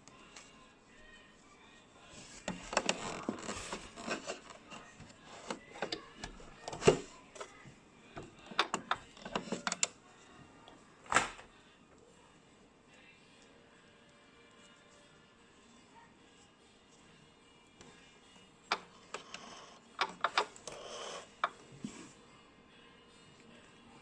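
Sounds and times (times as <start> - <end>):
clicks and knocks of handling: 2.2 - 7.6, 8.2 - 10.0, 18.7 - 20.8.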